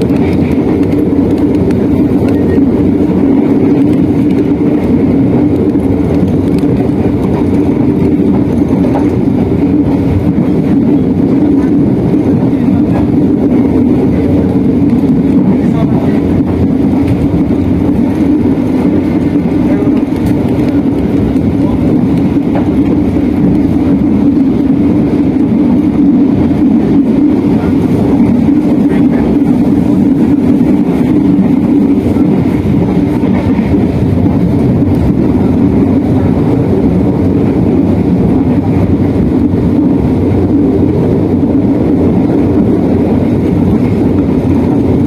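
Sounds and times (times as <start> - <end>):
train rumble from inside carriage: 0.0 - 45.0.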